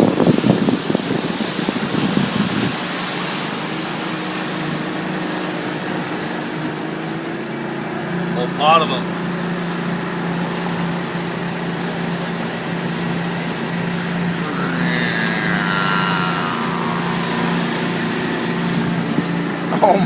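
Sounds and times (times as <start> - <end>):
boat motor running: 0.0 - 20.0
whine sweeping down in pitch: 14.4 - 19.4.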